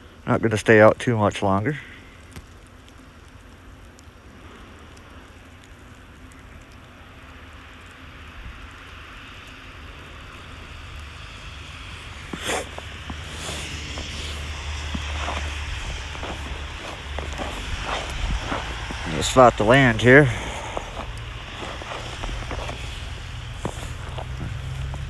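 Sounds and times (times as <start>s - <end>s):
wind buffeting microphone: 12.0s - 25.0s.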